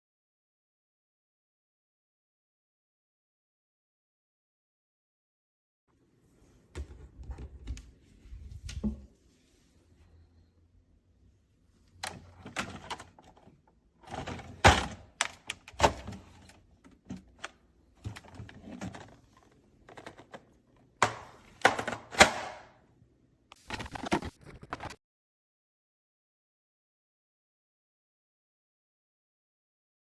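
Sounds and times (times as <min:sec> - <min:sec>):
plastic organizer knocks and rattles: 0:14.1 - 0:16.4, 0:21.0 - 0:22.5.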